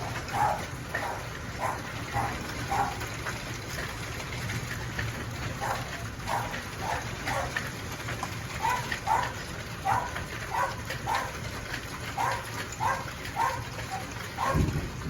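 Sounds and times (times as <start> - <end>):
dog barking: 0.0 - 3.0, 5.6 - 7.6, 8.6 - 11.4, 12.2 - 14.7
hail and rain hissing: 0.0 - 15.0.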